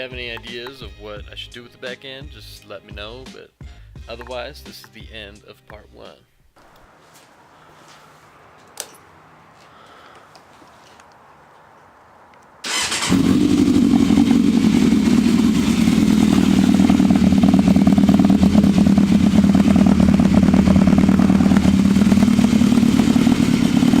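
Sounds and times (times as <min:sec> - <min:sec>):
motorcycle engine running: 0:12.7 - 0:24.0.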